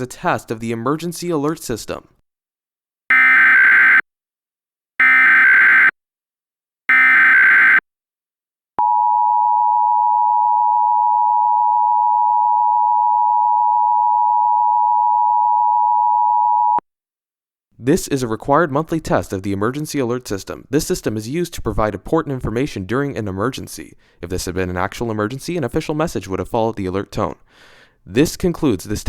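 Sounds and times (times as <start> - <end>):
two-tone alert signal: 3.1 - 4.0, 6.9 - 7.8
harsh data bursts: 6.9 - 7.8.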